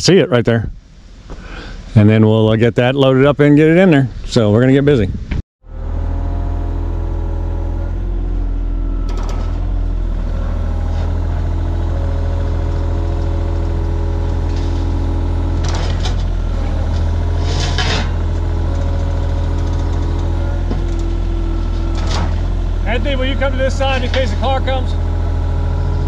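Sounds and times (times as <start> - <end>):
heavy vehicle engine humming: 5.6 - 26.0.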